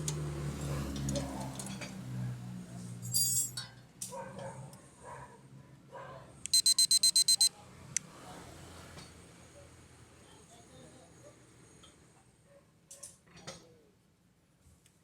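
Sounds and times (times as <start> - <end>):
high-pitched electronic beeps: 6.5 - 7.5.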